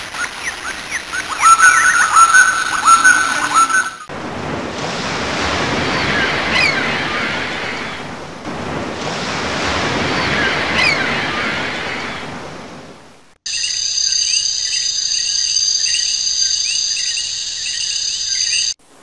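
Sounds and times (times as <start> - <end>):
ocean waves washing in: 0.0 - 13.4.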